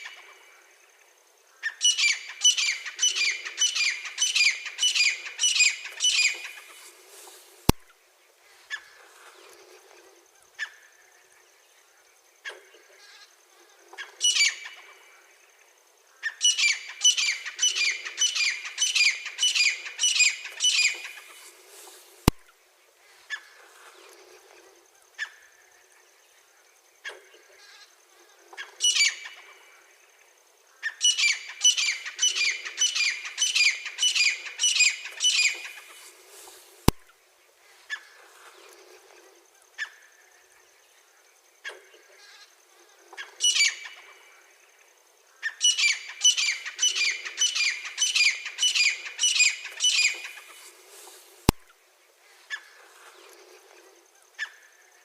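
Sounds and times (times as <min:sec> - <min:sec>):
sharp click: 0:36.8 - 0:37.0.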